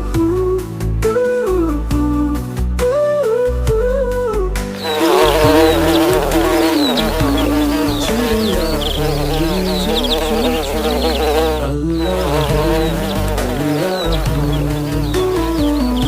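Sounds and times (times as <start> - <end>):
buzzy melody over stepping bass: 4.8 - 16.0
high bird-like chirps: 4.8 - 16.0.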